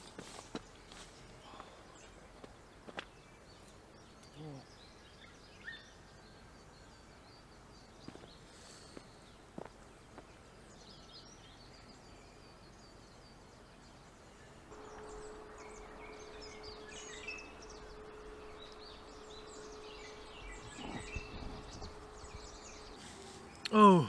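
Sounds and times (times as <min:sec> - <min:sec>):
small birds chirping: 0:00.0 - 0:24.0
soft rustling: 0:14.7 - 0:23.7
steady low hum: 0:14.7 - 0:24.0.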